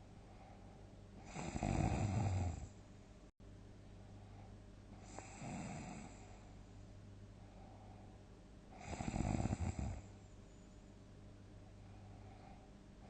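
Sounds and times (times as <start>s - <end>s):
person snoring: 1.2s - 2.7s, 5.0s - 6.2s, 8.8s - 10.0s.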